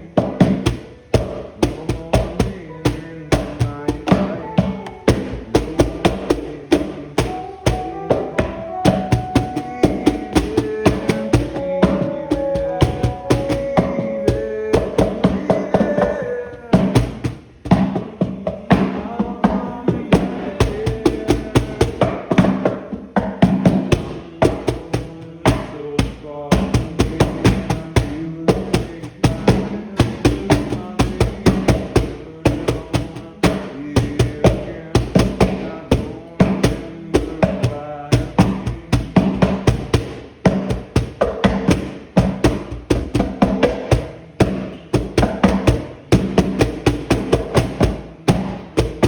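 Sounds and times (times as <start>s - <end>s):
drum kit beat: 0.0s - 49.0s
held melodic notes: 4.0s - 5.3s, 7.2s - 14.6s.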